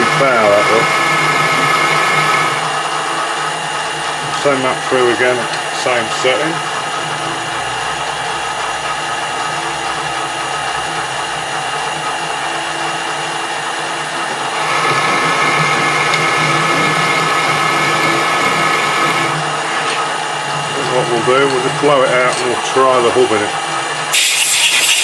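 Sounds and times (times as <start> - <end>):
metal lathe running: 0.0 - 25.0.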